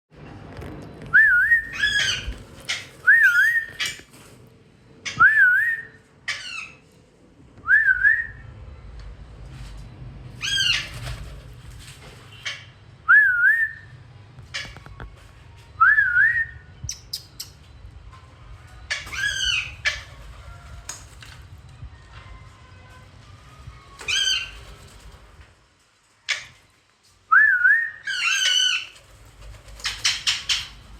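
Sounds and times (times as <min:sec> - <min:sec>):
parrot whistled calls: 0:01.2 - 0:04.0, 0:18.9 - 0:20.1, 0:27.3 - 0:29.0
parrot screechy calls: 0:01.5 - 0:04.1, 0:05.0 - 0:06.8, 0:10.4 - 0:11.1, 0:18.9 - 0:20.2, 0:24.0 - 0:24.6, 0:27.8 - 0:29.0.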